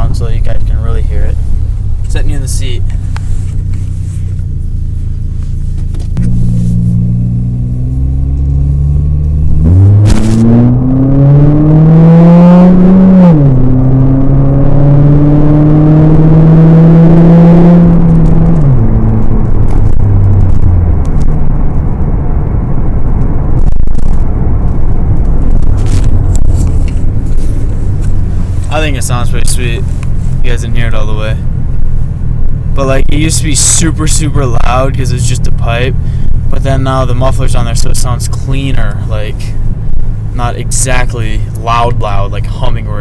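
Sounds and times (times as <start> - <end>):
car engine idling and revving: 0.0 - 43.0
loud exhaust note: 6.2 - 38.4.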